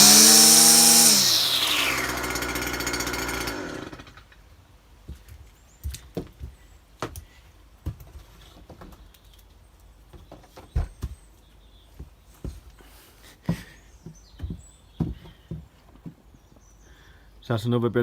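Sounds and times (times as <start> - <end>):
irregular knocks and clicks: 13.4 - 16.2.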